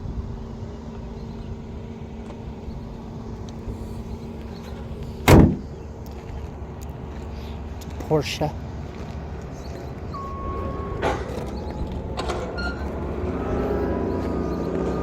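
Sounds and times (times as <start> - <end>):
steady low hum: 0.0 - 15.0
loud thump: 5.2 - 5.7.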